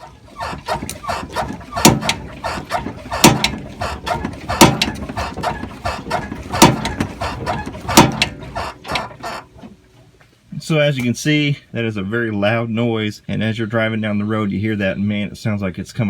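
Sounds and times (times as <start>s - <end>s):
loud suspension knocks: 0.4s - 9.4s.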